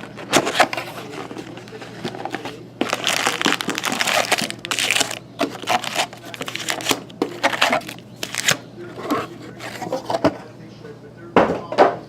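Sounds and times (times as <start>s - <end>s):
crinkling plastic wrap: 0.0s - 8.6s
rustling cardboard: 0.0s - 10.4s.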